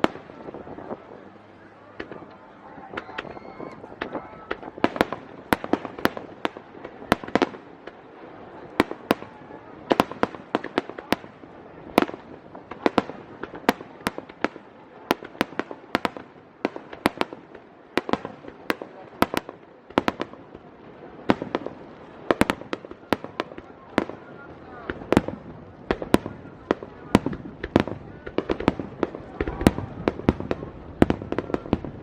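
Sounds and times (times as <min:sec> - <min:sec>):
fireworks cracks and bangs: 0:00.0 - 0:01.2, 0:01.9 - 0:32.0.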